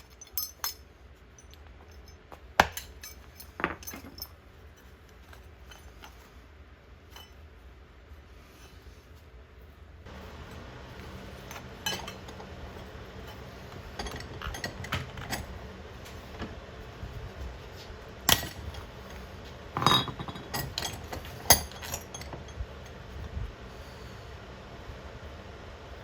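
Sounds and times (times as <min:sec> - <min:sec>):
metal and glass clinking: 0:00.0 - 0:06.2, 0:07.1 - 0:07.4, 0:11.4 - 0:12.5, 0:13.2 - 0:15.5, 0:18.3 - 0:19.2, 0:19.8 - 0:23.0
steady low hum: 0:00.0 - 0:26.0.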